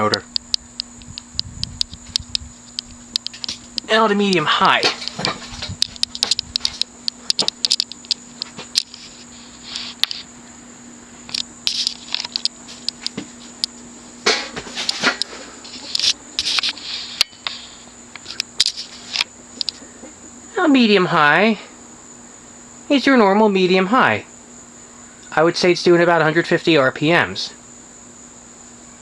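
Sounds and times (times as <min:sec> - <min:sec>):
irregular clicks: 0:00.0 - 0:09.1, 0:11.3 - 0:13.8
ceiling fan motor humming: 0:00.0 - 0:29.0.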